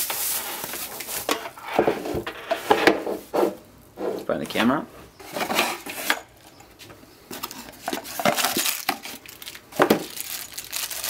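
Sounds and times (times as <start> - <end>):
packaging rustling: 7.4 - 11.0.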